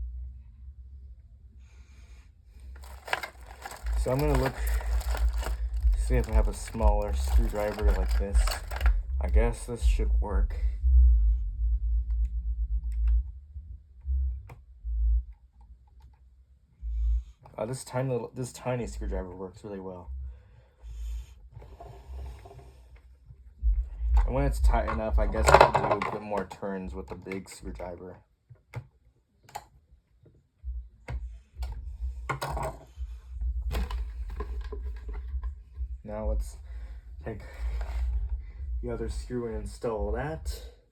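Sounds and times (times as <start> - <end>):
low handling rumble: 2.6 - 15.6, 18.8 - 25.8, 30.6 - 40.9.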